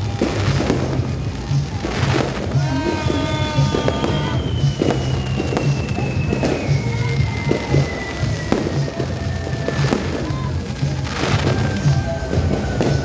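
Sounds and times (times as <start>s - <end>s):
background music with steady beat: 0.0s - 13.0s
falling firework whistle: 0.0s - 13.0s
fireworks bangs: 0.0s - 13.0s.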